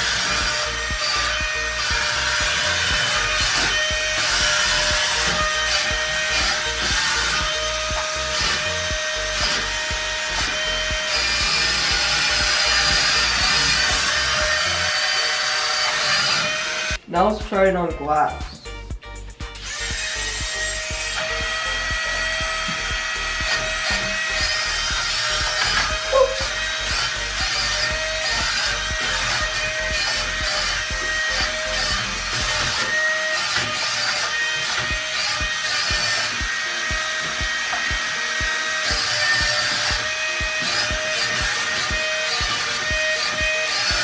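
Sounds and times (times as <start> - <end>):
music with a steady beat: 0.0 - 15.2, 16.3 - 44.0.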